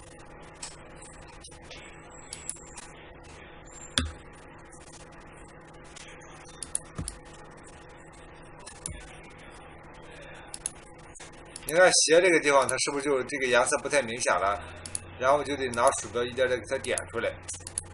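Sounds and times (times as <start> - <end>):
faint steady hum: 0.0 - 17.9
computer mouse clicks: 2.3 - 2.9, 6.5 - 7.2, 10.5 - 10.8, 14.8 - 15.1, 16.9 - 17.9.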